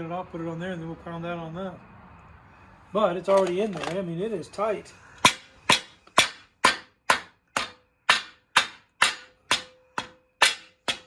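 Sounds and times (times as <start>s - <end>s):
hammer striking metal: 5.2s - 11.0s.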